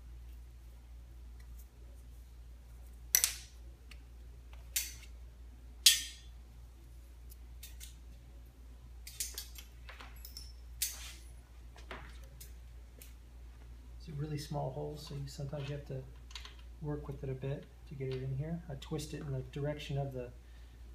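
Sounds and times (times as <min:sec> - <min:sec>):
metal tools clicking and clinking: 0:09.0 - 0:11.0.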